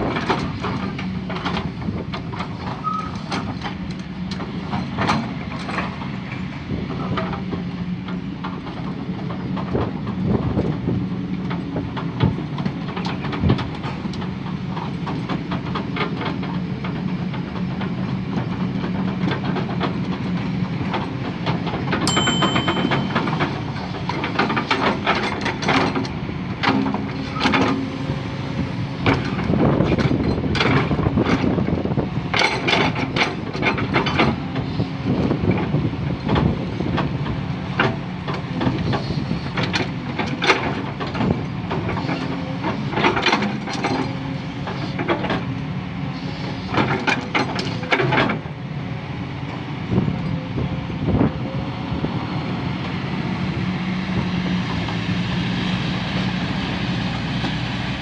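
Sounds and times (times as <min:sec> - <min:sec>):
short high beep: 0:22.1 - 0:23.7.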